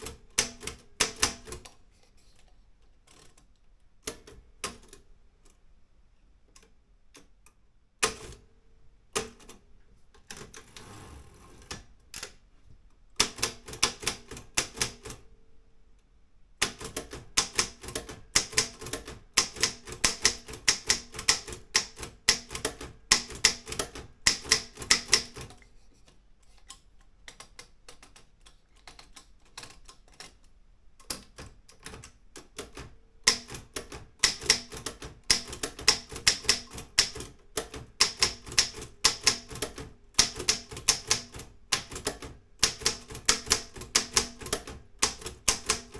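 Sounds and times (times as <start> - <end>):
manual typewriter key strikes: 0.0 - 1.7, 13.2 - 15.2, 16.6 - 25.5, 31.1 - 45.9.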